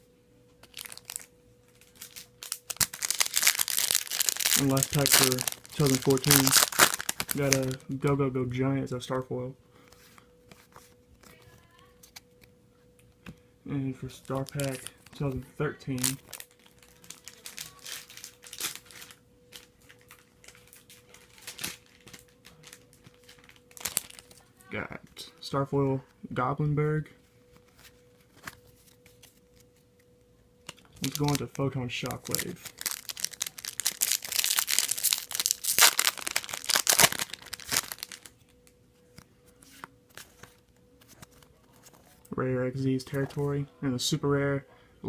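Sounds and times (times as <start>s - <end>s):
faint steady hum: 0.0s - 45.0s
foil wrapper crinkling and tearing: 0.6s - 7.9s, 14.2s - 24.5s, 30.6s - 38.5s.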